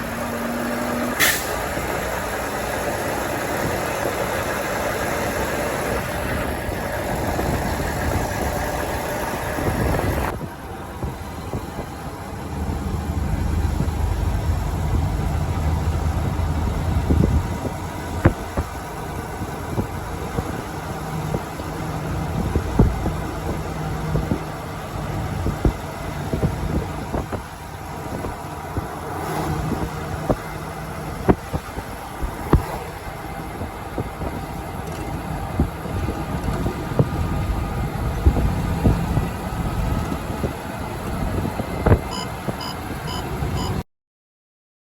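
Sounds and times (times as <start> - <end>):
road noise: 0.0 - 43.8
truck engine running: 0.0 - 43.8.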